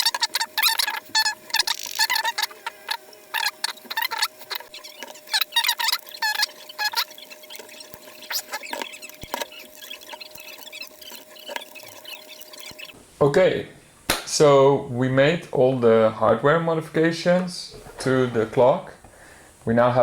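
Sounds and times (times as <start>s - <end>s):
cloth squeaking on plastic: 0.0s - 13.0s.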